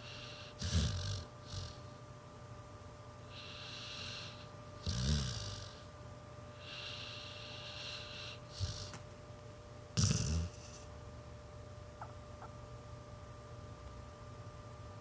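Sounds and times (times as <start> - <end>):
dog snorting: 0.0 - 1.9, 3.4 - 5.9, 6.6 - 9.1, 10.0 - 10.9
dog hissing breaths: 0.0 - 2.0, 3.3 - 4.6, 6.5 - 9.1
dog snoring: 0.0 - 2.0, 3.3 - 5.9, 6.5 - 9.0, 9.9 - 10.9.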